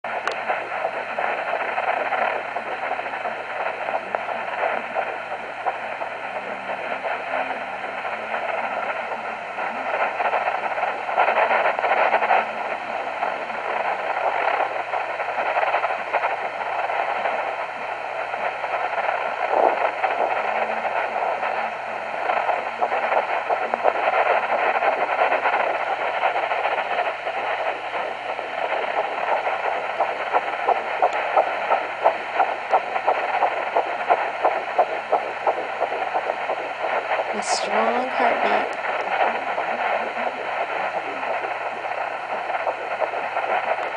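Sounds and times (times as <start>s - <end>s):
doppler speaker static hiss: 0.0s - 43.9s.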